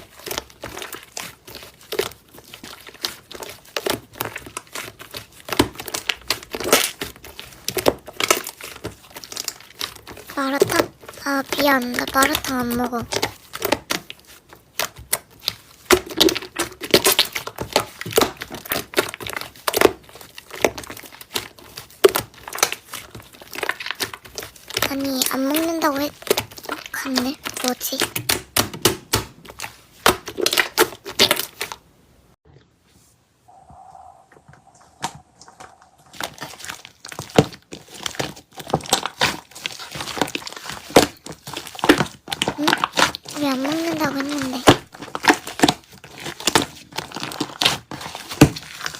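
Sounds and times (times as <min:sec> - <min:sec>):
slime crackling and popping: 0:00.0 - 0:31.8, 0:35.0 - 0:48.9
slime squished by hand: 0:33.5 - 0:48.9.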